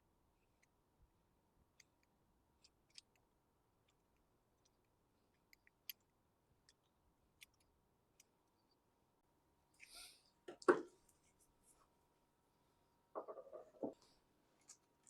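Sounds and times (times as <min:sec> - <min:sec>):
faint small clicks and ticks: 0:00.4 - 0:00.8, 0:01.7 - 0:08.8.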